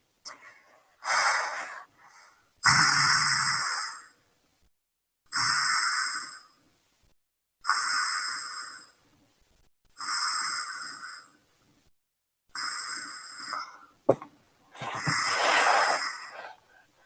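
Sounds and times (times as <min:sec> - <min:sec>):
rasping snoring: 0:14.8 - 0:16.8.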